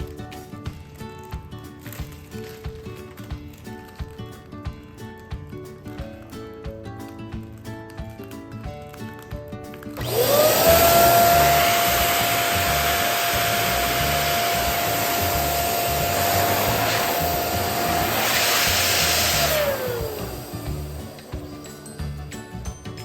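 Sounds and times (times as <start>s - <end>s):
electric balloon pump motor: 10.0s - 22.4s
rushing air hiss: 10.5s - 22.2s.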